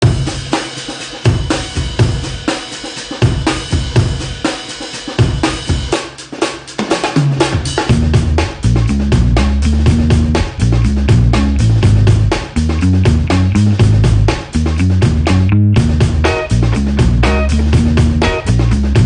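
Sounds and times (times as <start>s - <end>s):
drum kit beat: 0.0s - 19.0s
bass line: 7.8s - 19.0s.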